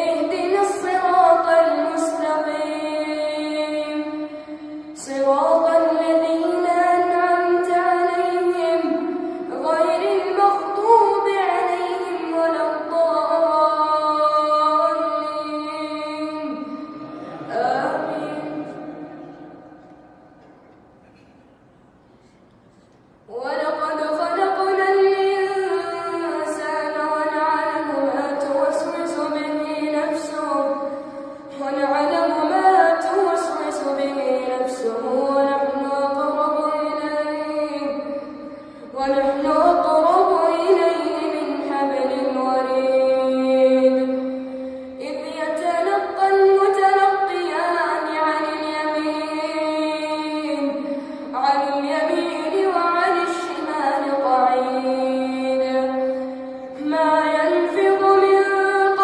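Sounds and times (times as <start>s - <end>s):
boy reciting melodically: 0.0s - 19.8s, 23.3s - 59.0s.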